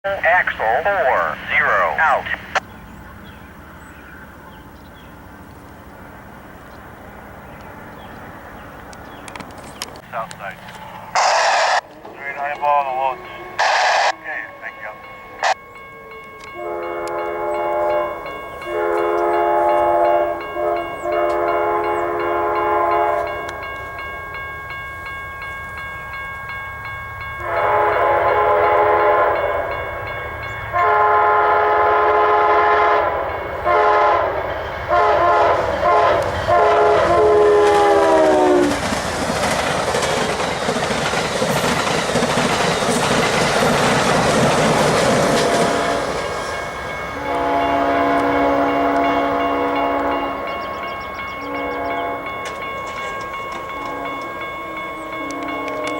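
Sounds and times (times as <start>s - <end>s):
passing train rumble: 0.0s - 55.9s
locomotive air horn blasts: 13.1s - 23.6s, 27.4s - 29.7s, 30.7s - 38.8s, 47.2s - 50.6s, 51.4s - 52.4s, 53.8s - 55.9s.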